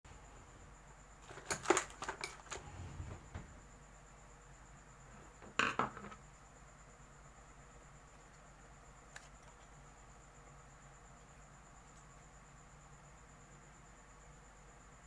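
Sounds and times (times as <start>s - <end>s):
small hard objects clattering: 1.2s - 2.6s.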